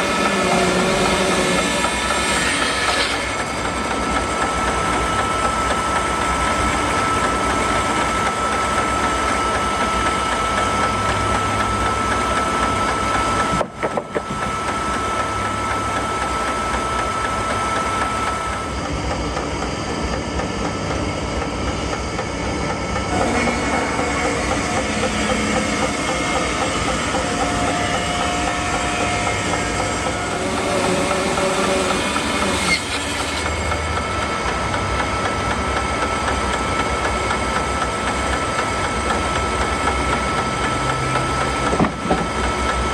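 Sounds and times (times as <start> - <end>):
saw blade cutting log: 0.0 - 5.7, 23.1 - 34.7, 38.0 - 42.8
sawmill engine running: 0.0 - 42.9.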